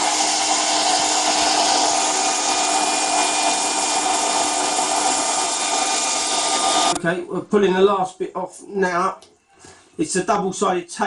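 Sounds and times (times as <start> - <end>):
hairdryer blowing air: 0.0 - 7.0.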